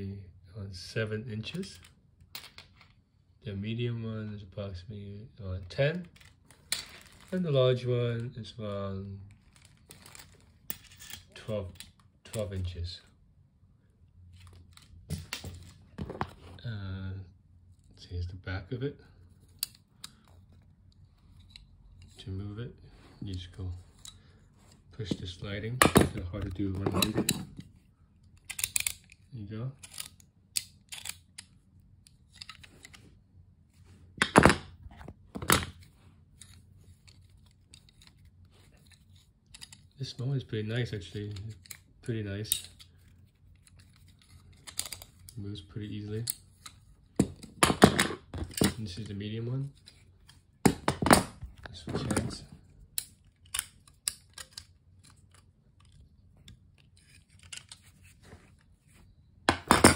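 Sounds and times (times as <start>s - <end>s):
pliers clacking: 29.8s - 31.5s.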